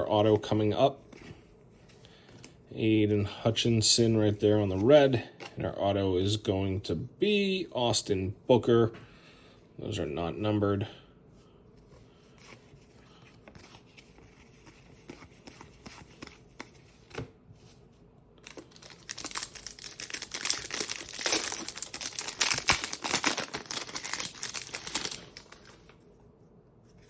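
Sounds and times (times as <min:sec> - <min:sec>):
wrapper tearing and crinkling: 0:18.4 - 0:25.9.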